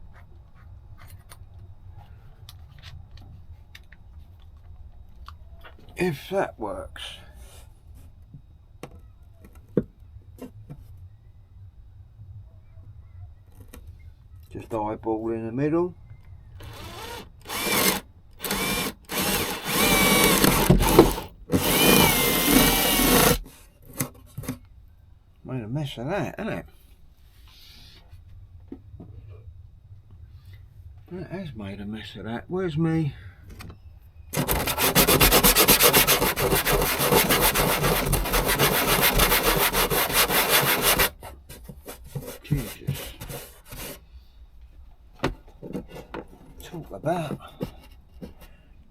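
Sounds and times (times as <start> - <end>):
power drill boring: 16.6 - 23.5, 34.4 - 41.1
rubbing and rasping on wood: 16.6 - 23.5, 34.4 - 44.0.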